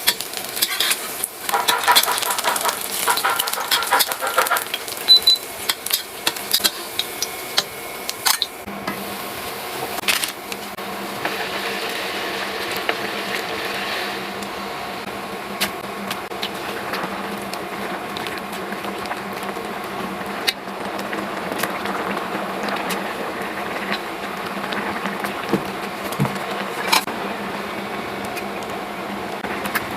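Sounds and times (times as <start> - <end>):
mechanical hum with hiss: 0.0 - 29.9.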